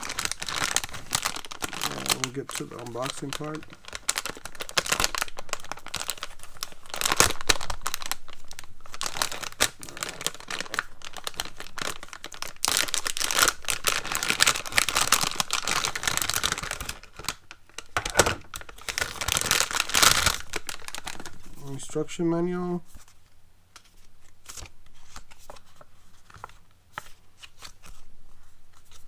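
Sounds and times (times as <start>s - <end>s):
packaging crinkling and tearing: 0.0s - 22.0s.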